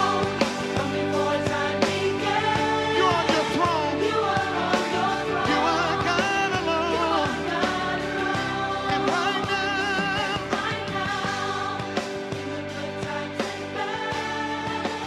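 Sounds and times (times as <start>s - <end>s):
band playing steady beat: 0.0s - 15.0s.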